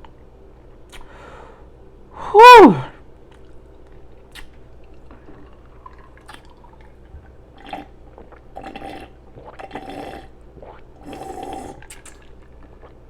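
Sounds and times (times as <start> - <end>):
mouth smacking and chewing: 3.3 - 13.0.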